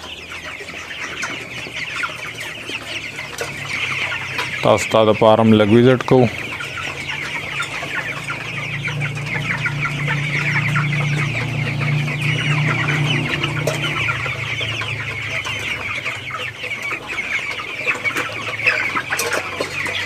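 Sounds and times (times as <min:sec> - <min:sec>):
chickens cheeping and clucking: 0:00.0 - 0:20.0
low steady hum: 0:06.4 - 0:17.0.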